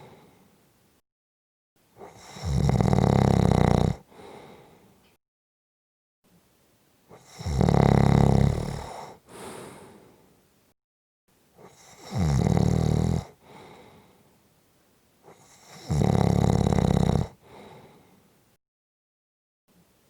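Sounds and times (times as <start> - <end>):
person snoring: 2.0 - 4.6, 7.2 - 10.1, 11.6 - 13.8, 15.3 - 18.0
soft exhale: 9.2 - 10.3.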